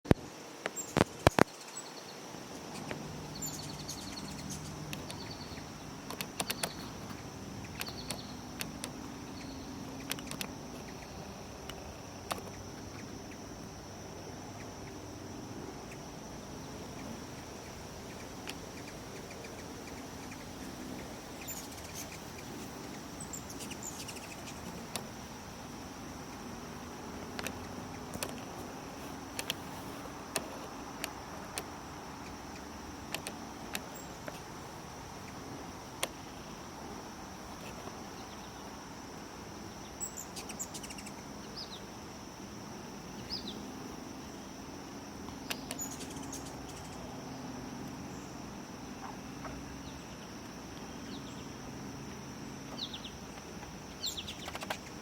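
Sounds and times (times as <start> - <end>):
high insect drone: 0.1 - 55.0
hummingbird wings humming: 0.3 - 55.0
sharp clicks: 4.9 - 5.3, 6.1 - 9.0, 9.9 - 10.6, 27.3 - 28.5, 29.3 - 29.6, 32.5 - 34.5.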